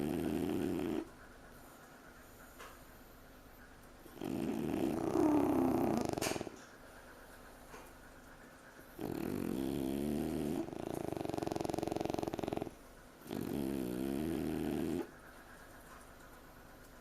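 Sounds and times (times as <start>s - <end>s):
dog snoring: 0.0s - 1.1s, 4.0s - 6.6s, 9.0s - 15.2s.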